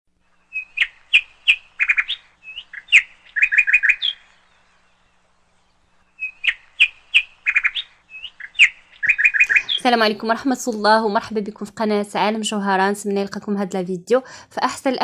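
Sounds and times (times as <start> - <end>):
songbird chirping and twittering: 0.3 - 10.1.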